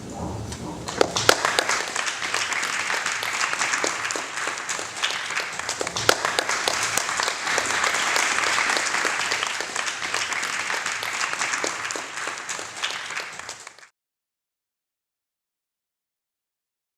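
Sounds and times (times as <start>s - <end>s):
audience applauding: 0.7s - 13.9s.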